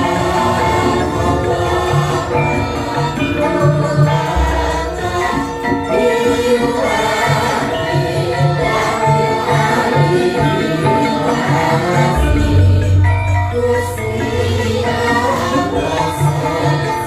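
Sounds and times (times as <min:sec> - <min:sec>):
gamelan music: 0:00.0 - 0:17.0
deep held low tone: 0:12.2 - 0:15.2.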